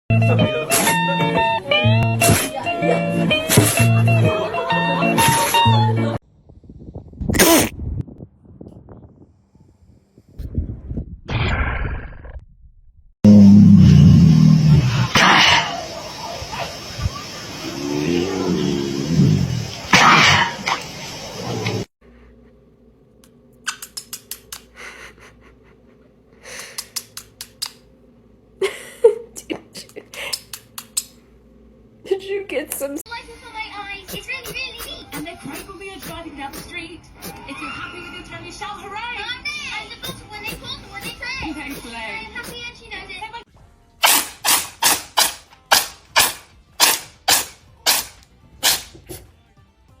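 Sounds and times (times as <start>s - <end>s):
animal sneezing: 3.4s - 4.0s, 7.4s - 7.7s, 14.6s - 15.9s, 17.7s - 20.9s, 47.3s - 49.4s.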